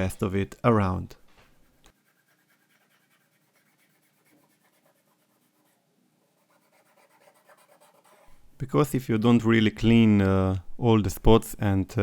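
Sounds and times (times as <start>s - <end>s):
faint rubbing on phone frame: 1.4s - 8.4s.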